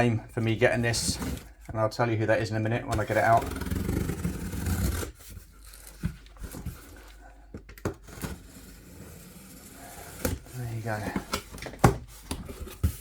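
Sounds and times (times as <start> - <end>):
cardboard rubbing and rustling: 2.9 - 7.1, 8.0 - 13.0.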